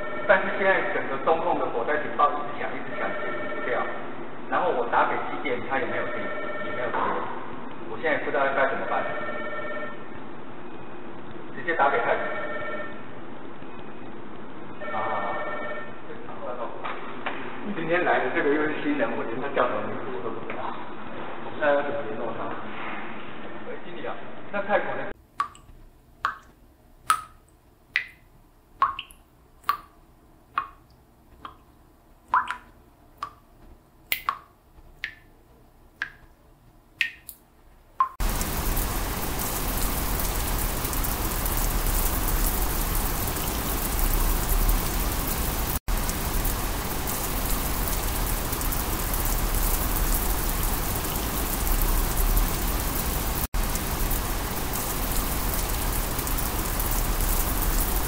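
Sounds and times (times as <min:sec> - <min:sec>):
water drops plinking: 0:25.4 - 0:30.0, 0:30.6 - 0:31.7, 0:32.3 - 0:33.4, 0:34.1 - 0:35.3, 0:36.0 - 0:36.3, 0:37.0 - 0:37.4, 0:38.0 - 0:38.2.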